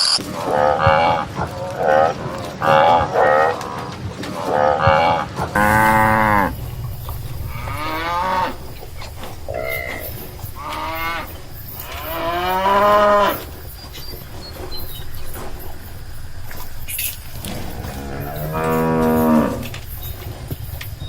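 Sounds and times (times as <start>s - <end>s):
cattle mooing: 4.5s - 21.0s.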